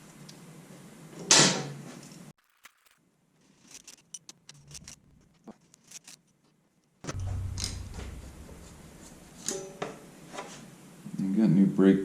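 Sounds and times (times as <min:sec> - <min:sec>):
rumbling rustle: 0:07.1 - 0:09.8.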